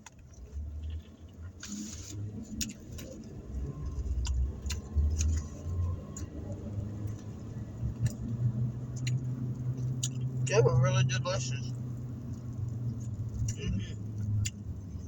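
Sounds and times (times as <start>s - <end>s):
low rumble inside a car: 0.0s - 15.0s
chewing with wet mouth clicks: 2.4s - 10.5s, 12.2s - 15.0s.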